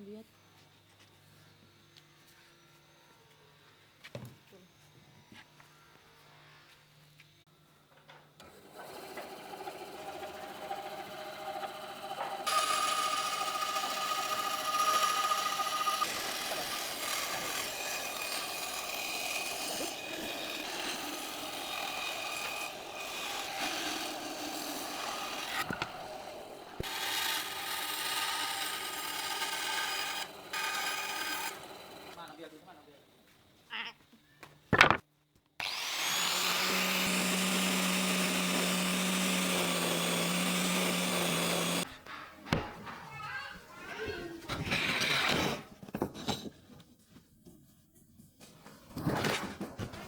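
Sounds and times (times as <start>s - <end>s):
power tool rasping wood: 8.5s - 32.4s, 35.6s - 41.9s.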